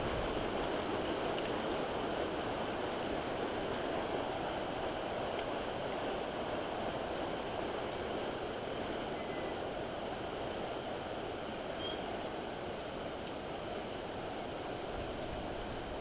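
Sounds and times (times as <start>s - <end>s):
rushing outdoor noise: 0.0s - 16.0s.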